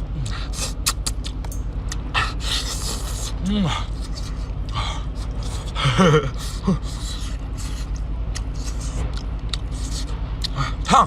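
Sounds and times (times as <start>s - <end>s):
steady low hum: 0.0s - 11.0s
person chewing: 0.2s - 10.9s.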